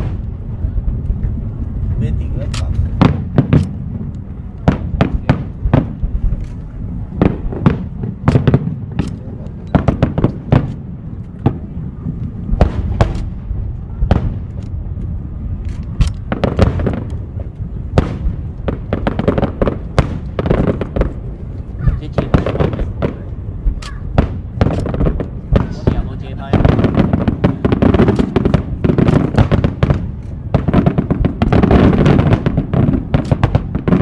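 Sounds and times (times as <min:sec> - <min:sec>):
constant low rumble: 0:00.0 - 0:34.0
fireworks bangs: 0:00.0 - 0:34.0.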